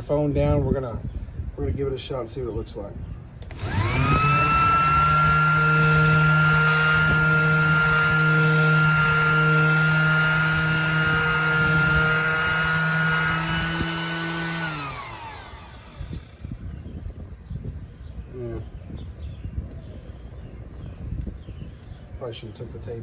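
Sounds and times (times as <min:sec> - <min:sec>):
orbital sander whining: 0:03.4 - 0:16.6
sander winding down: 0:03.5 - 0:16.5.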